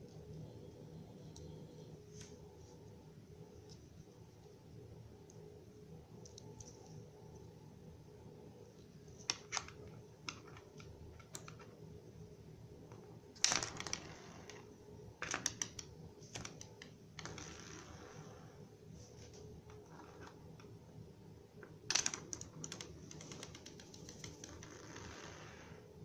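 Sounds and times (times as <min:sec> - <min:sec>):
plastic pieces clicking and tapping: 0:09.2 - 0:11.7, 0:13.4 - 0:17.5, 0:21.6 - 0:24.7.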